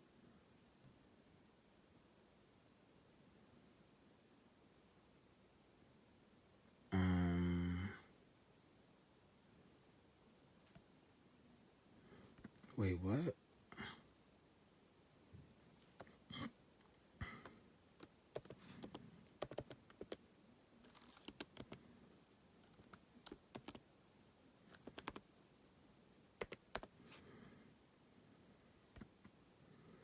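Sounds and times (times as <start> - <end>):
soft keyboard key clicks: 22.6 - 23.8.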